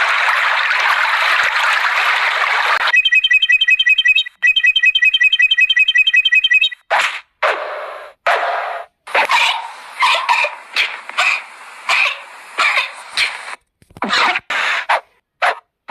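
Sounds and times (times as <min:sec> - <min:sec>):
rapid high chirps: 0:02.9 - 0:06.8.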